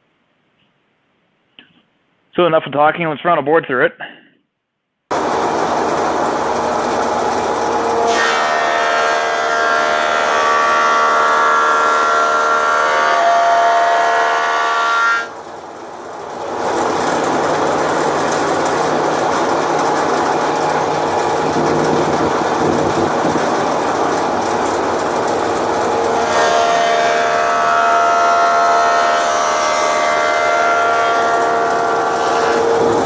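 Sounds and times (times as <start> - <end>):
machine shaking and rattling: 5.1 - 8.0, 15.4 - 26.2
planer machine running: 5.1 - 33.0.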